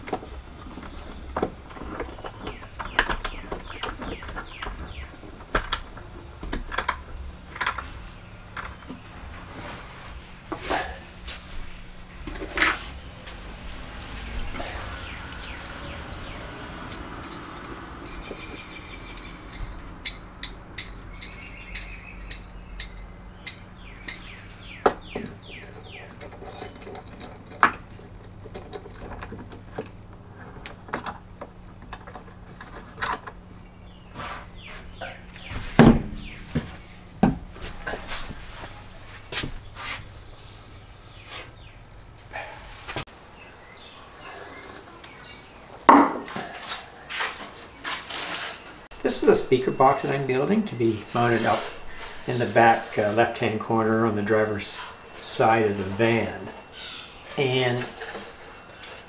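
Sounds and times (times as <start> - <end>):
sharp clicks and knocks: 0.0 - 8.0
birds chirping: 0.0 - 59.0
steady low hum: 0.0 - 59.0.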